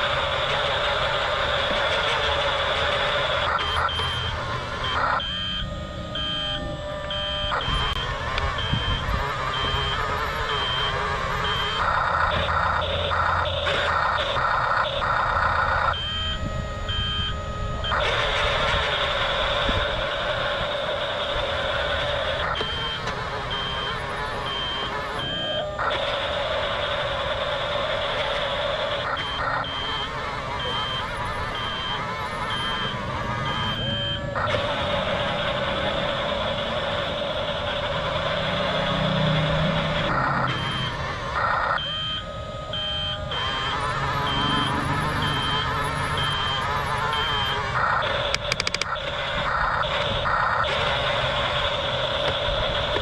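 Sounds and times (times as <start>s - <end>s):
reversing alarm beeps: 0.0s - 53.0s
toy bulldozer motors whirring: 16.9s - 53.0s.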